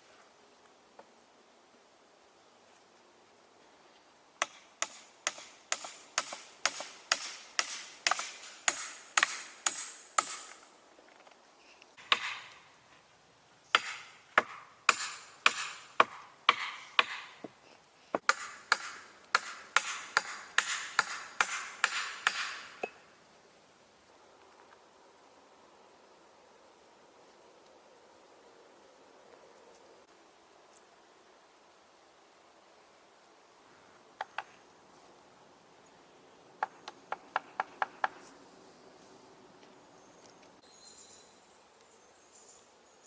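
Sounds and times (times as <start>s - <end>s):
hand tool striking wood: 4.4s - 10.7s, 12.0s - 12.6s, 13.8s - 17.6s, 18.2s - 23.0s.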